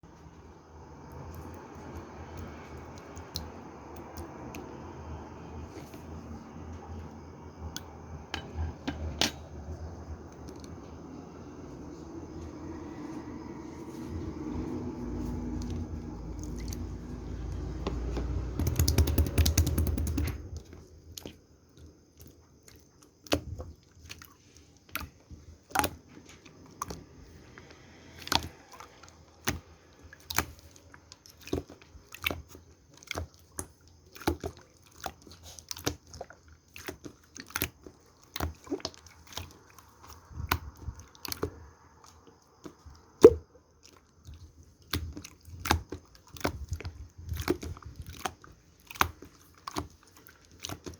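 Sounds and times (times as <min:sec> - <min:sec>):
sharp clicks of pressed slime: 0:18.6 - 0:20.4
slime handling noise: 0:28.2 - 0:50.9.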